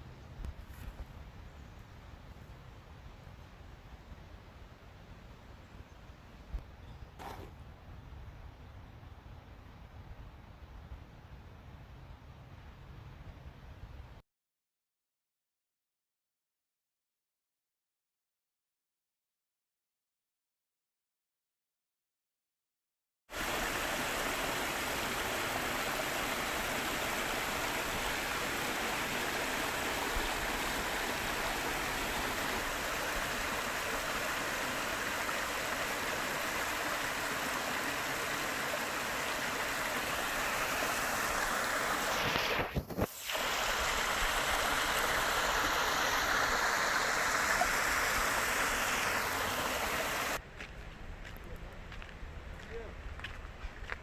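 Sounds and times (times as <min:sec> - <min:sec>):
stream water rushing: 0:23.3 - 0:50.4.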